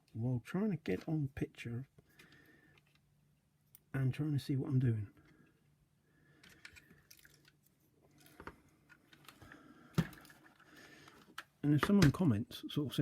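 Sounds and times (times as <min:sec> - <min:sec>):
small clicks rustles and scrapes: 0:06.4 - 0:09.6.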